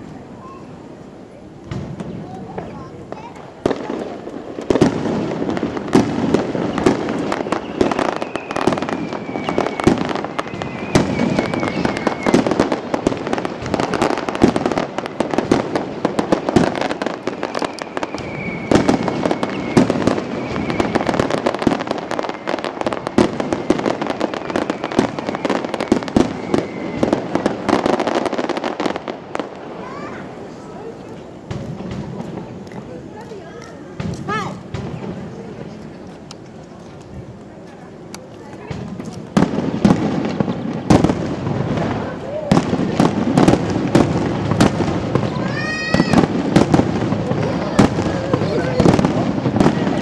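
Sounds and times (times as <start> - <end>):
fireworks crackling: 0.0 - 50.0
firework shells bursting: 1.6 - 29.2, 38.1 - 50.0.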